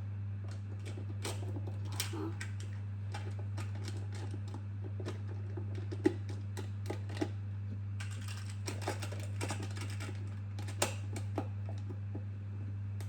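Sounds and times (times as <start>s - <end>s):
steady low hum: 0.0s - 4.8s.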